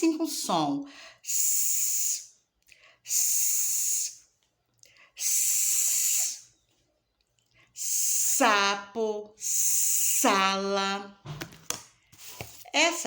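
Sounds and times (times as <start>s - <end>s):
woman making hissing s sound: 1.3s - 2.3s, 3.1s - 4.2s, 5.2s - 6.4s, 7.8s - 8.4s, 9.4s - 10.4s.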